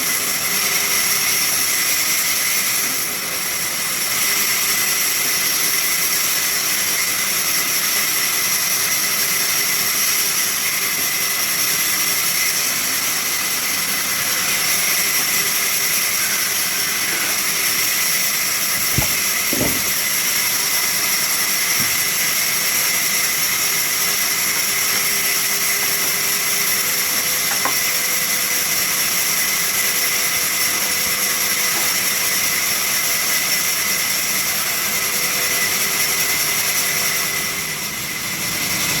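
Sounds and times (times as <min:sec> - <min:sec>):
sawmill machinery whining hiss: 0:04.3 - 0:39.0
sharp knocks: 0:18.8 - 0:20.1.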